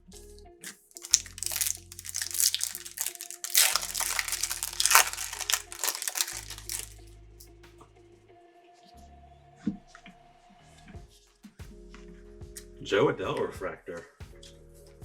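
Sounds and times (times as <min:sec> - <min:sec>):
foil wrapper crinkling: 0:00.6 - 0:07.0.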